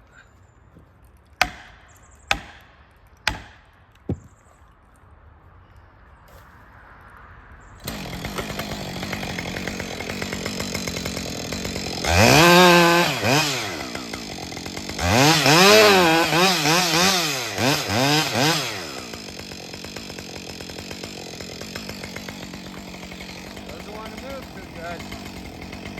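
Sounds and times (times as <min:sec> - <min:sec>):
chainsaw idling and revving: 0:01.4 - 0:02.6, 0:03.3 - 0:03.6, 0:07.8 - 0:25.9.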